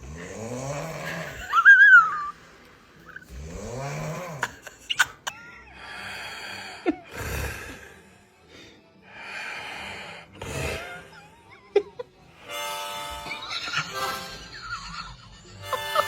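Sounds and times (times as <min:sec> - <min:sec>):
person snoring: 0:00.0 - 0:02.3, 0:03.1 - 0:04.8, 0:05.7 - 0:08.2, 0:09.1 - 0:11.2.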